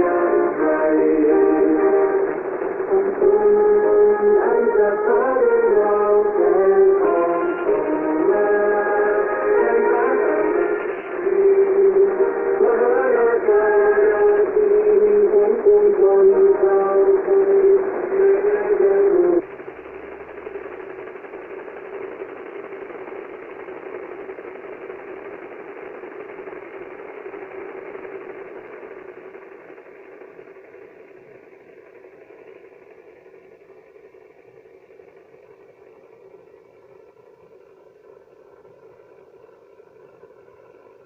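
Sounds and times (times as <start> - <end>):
radio music: 0.0 - 32.6
shortwave static hiss: 0.0 - 41.0.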